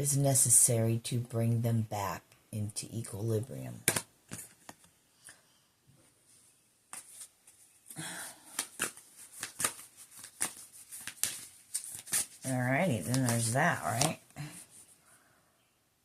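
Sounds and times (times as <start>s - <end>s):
cards shuffling and snapping: 3.8s - 5.0s, 6.9s - 14.2s.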